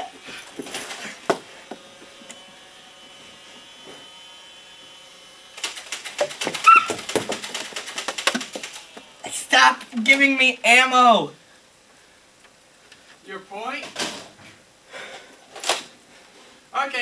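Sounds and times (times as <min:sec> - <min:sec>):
faint room hum: 0:00.0 - 0:17.0
rapid clicking and rattling: 0:05.6 - 0:09.0.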